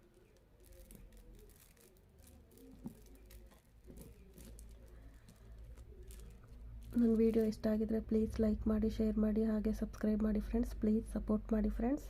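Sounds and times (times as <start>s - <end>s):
beads clicking and rustling: 0.0s - 8.4s.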